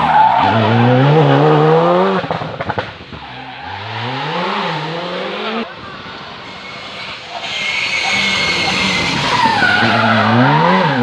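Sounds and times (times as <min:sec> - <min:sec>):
exhaust crackles and pops: 0:00.0 - 0:04.4
rally car engine accelerating: 0:00.0 - 0:11.0.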